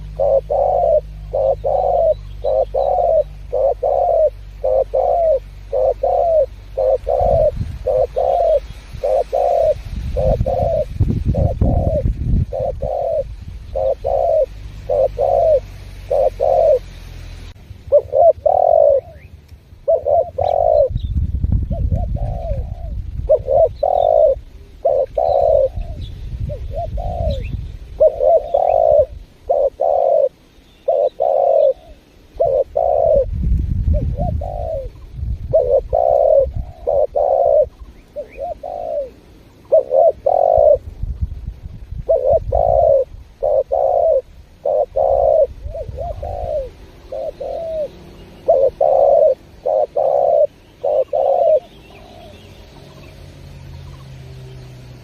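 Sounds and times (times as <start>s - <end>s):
dove cooing: 0.0s - 41.0s, 42.0s - 54.6s
low rumble: 19.0s - 23.8s.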